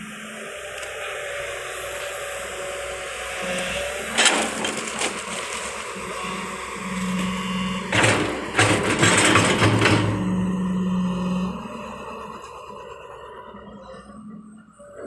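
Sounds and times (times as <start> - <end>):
excavator engine hum: 0.0 - 15.0.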